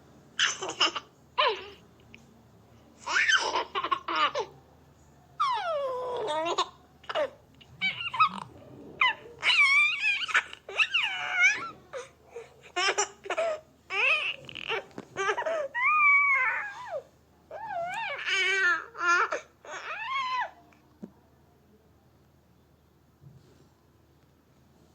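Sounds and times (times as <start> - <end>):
baby babbling crying and laughing: 5.5 - 12.1.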